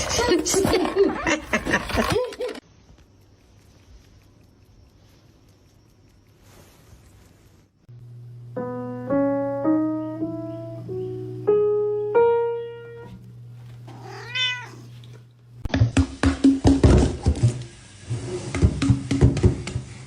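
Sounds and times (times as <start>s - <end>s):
steady low hum: 2.7s - 9.4s
cat meowing: 13.9s - 15.0s.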